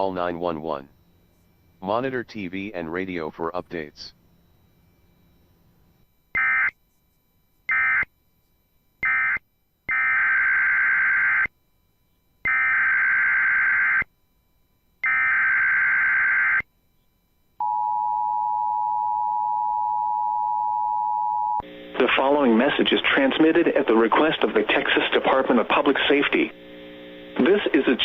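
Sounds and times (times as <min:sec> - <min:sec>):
buzzing digital data bursts: 0:06.3 - 0:06.8, 0:07.6 - 0:08.1.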